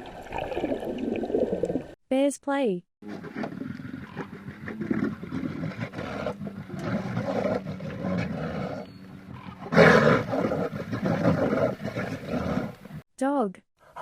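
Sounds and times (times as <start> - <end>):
bears growling and roaring: 3.0 - 13.0.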